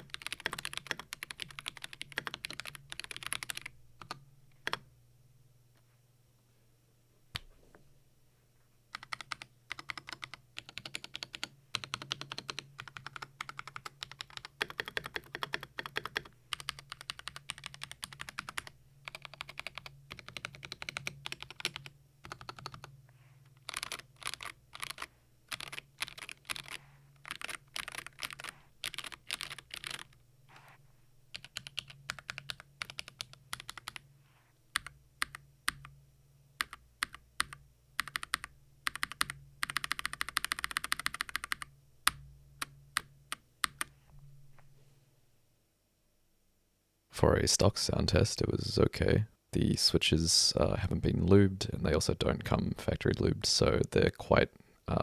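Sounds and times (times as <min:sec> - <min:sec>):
mechanical keyboard typing: 0:00.0 - 0:04.8, 0:09.0 - 0:22.9, 0:23.6 - 0:30.2, 0:31.4 - 0:34.0, 0:34.8 - 0:35.9, 0:36.6 - 0:43.9.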